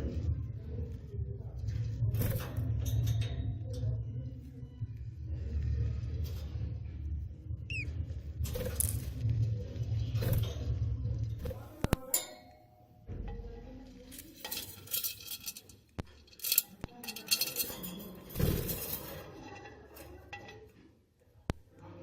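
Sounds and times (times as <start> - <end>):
rustling and handling noises: 13.4 - 21.0
clinks of small hard objects: 14.0 - 18.2.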